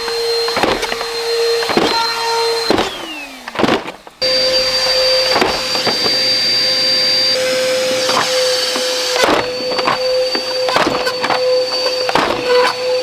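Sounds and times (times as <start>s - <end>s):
vacuum cleaner motor whining: 0.0s - 13.0s.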